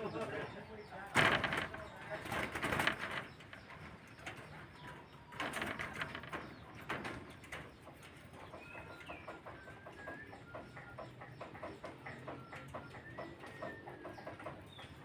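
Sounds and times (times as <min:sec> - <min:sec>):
doves cooing: 0:00.0 - 0:15.0
rustling noises: 0:01.1 - 0:09.2.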